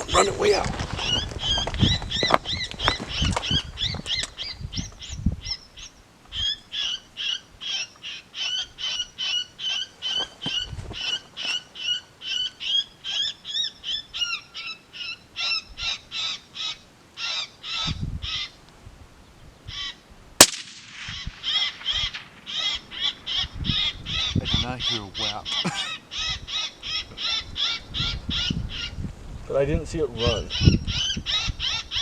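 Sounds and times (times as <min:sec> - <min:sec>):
high squealing distress calls: 0:21.1 - 0:29.0.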